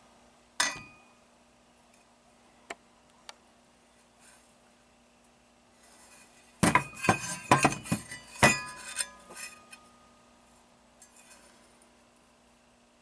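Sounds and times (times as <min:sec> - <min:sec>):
metal parts clanking and ringing: 0:06.7 - 0:09.9.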